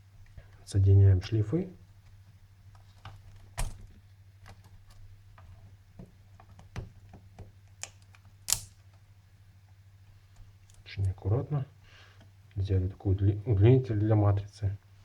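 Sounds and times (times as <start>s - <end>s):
plastic parts clicking: 6.4s - 9.0s.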